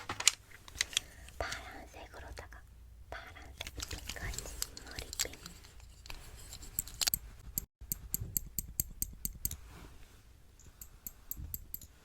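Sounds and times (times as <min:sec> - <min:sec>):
art tools clicking and snipping: 0:06.8 - 0:09.6, 0:10.6 - 0:12.0.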